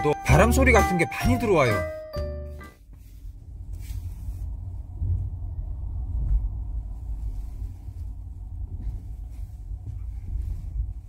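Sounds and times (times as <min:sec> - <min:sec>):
road and wind noise in car cabin: 0:02.8 - 0:11.0.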